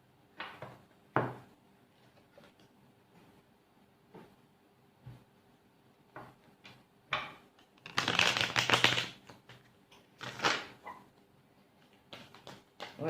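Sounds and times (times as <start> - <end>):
cards flicking and clattering: 7.8 - 9.6, 10.2 - 10.8.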